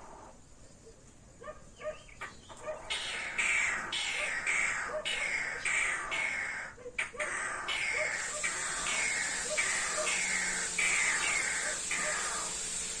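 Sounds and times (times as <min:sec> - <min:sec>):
bird calling harshly: 0:01.8 - 0:13.0
steady high hiss: 0:02.9 - 0:13.0.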